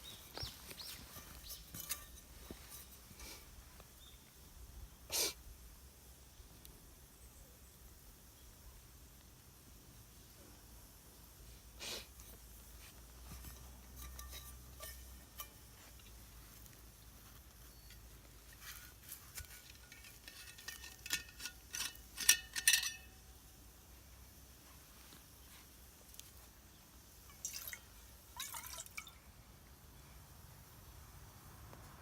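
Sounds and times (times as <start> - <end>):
metal cookware clinking: 1.1 - 3.0, 13.4 - 16.0, 19.6 - 23.2.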